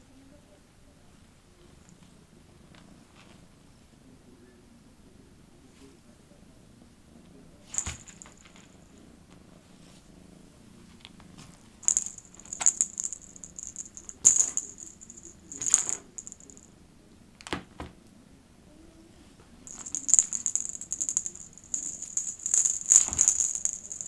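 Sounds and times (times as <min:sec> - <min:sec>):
metallic jingling: 0:11.8 - 0:16.7, 0:19.7 - 0:24.0.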